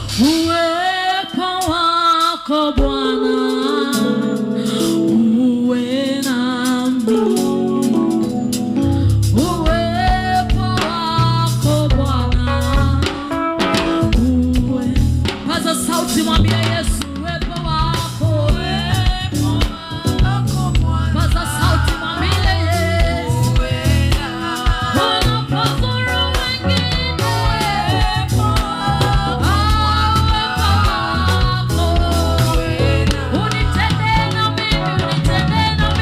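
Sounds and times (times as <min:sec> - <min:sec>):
band with bass and drums: 0:00.0 - 0:36.0
singers worship song: 0:18.4 - 0:36.0.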